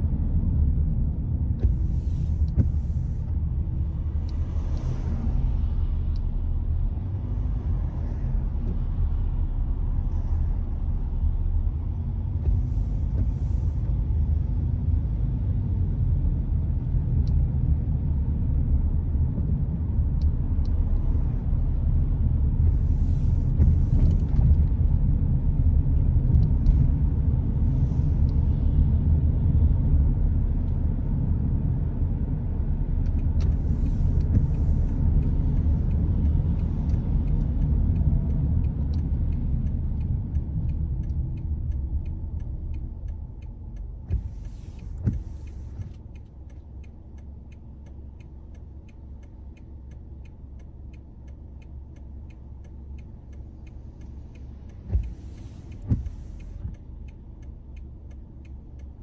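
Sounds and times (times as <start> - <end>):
windscreen wiper swish and knock: 1.4 - 14.8, 16.4 - 31.2, 32.7 - 43.0, 43.7 - 46.4, 53.6 - 57.4.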